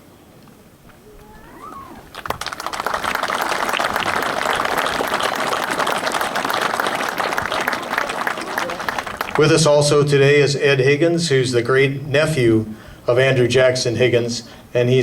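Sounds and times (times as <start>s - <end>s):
audience applauding: 1.1s - 9.9s.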